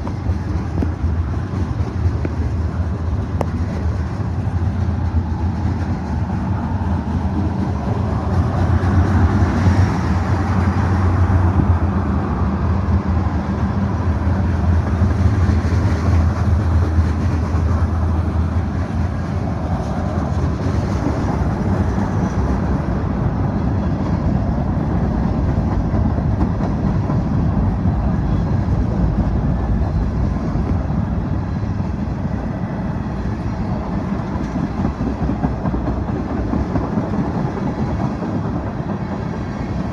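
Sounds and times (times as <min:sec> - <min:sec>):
freight train rolling past: 0:00.0 - 0:39.9.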